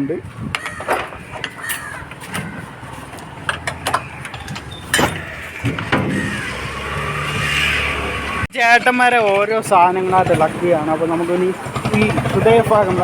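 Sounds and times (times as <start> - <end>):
metal tools knocking and clinking: 0.5 - 2.5, 3.4 - 6.2.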